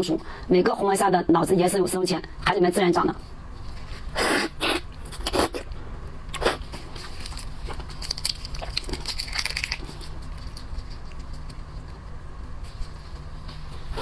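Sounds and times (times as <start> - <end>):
crab shell cracking: 7.0 - 11.6.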